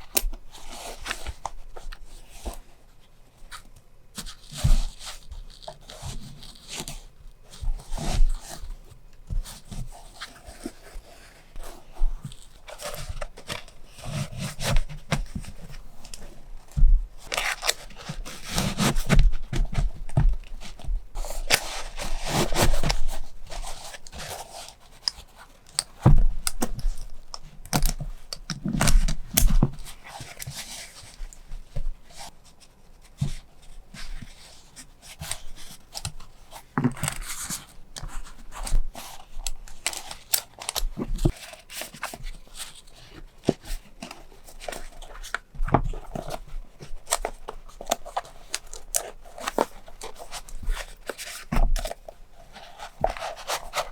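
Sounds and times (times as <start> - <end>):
packaging crinkling and rustling: 9.5 - 32.3, 34.0 - 53.9.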